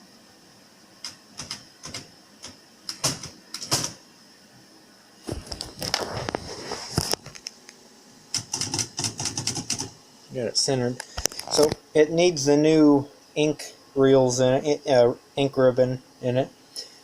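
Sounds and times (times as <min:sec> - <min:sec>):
typewriter mechanism clacking: 0:01.0 - 0:04.0, 0:08.4 - 0:09.9
typewriter carriage ratcheting clicks: 0:02.9 - 0:04.0, 0:08.4 - 0:09.9.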